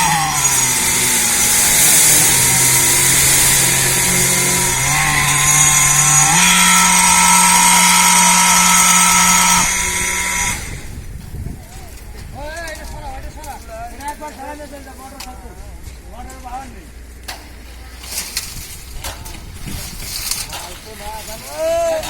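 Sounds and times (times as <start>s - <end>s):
machine engine running loudly: 0.0s - 10.9s.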